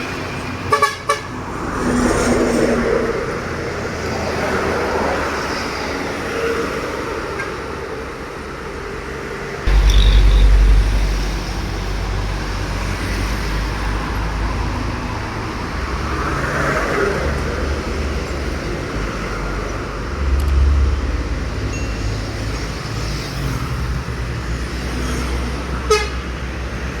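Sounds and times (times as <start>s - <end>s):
road traffic with trucks: 0.0s - 27.0s
loud deep rumble: 9.7s - 13.5s.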